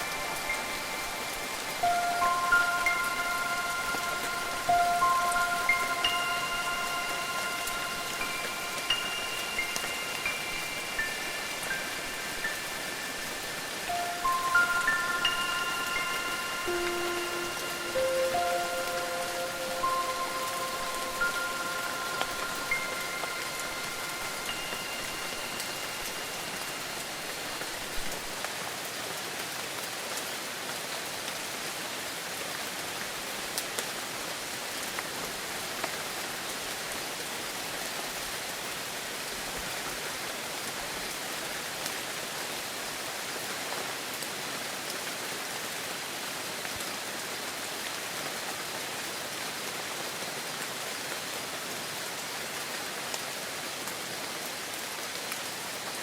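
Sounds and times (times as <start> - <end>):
wind chime ringing: 0.0 - 28.2
heavy rain hissing: 0.0 - 56.0.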